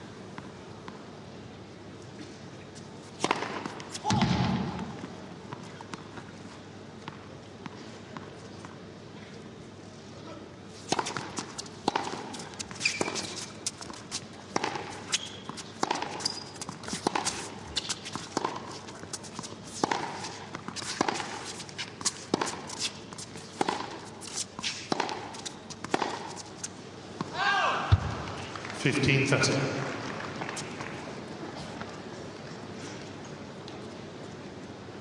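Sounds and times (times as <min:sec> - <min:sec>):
racket hitting tennis ball: 0:03.2 - 0:05.2, 0:10.8 - 0:28.4
shoe squeaks on court: 0:12.3 - 0:13.9, 0:14.9 - 0:18.2.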